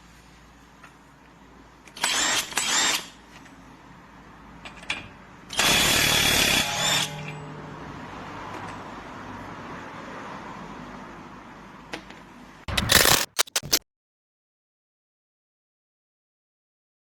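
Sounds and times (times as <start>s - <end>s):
impact wrench bursts: 5.5s - 7.2s, 12.7s - 13.8s.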